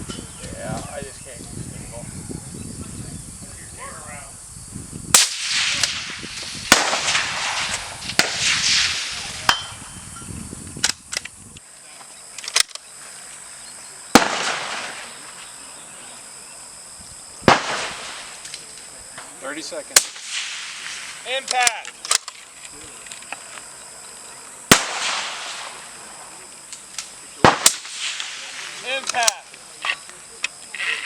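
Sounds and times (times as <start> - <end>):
sharp cracks: 5.1 - 9.9, 12.3 - 12.9, 14.1 - 15.4, 17.4 - 19.3, 19.9 - 23.7, 24.7 - 31.0
suppressed rifle shots: 5.2 - 9.8, 14.2 - 15.1, 17.4 - 18.5, 24.7 - 25.8, 27.4 - 29.4.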